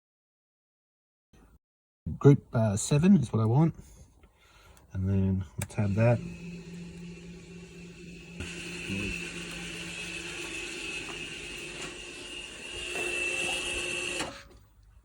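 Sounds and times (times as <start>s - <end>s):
brake caliper motors whining: 5.6s - 14.7s.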